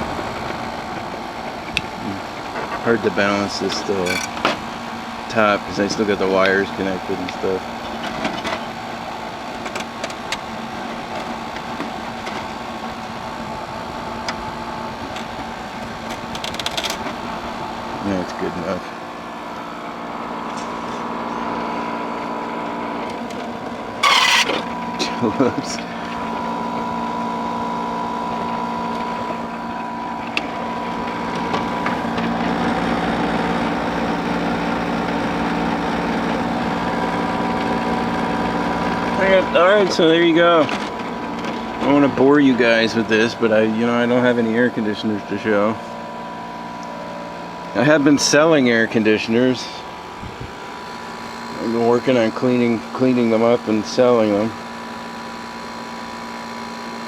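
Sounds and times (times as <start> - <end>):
dehumidifier humming: 0.0 - 57.0
fan rushing: 0.0 - 57.0
high steady tone: 3.3 - 5.2, 17.7 - 35.8.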